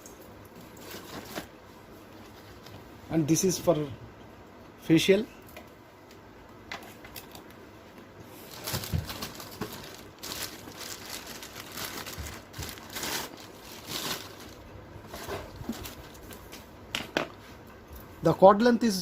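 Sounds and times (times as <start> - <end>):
plastic packaging rustling: 0.6 - 2.9, 8.3 - 16.7.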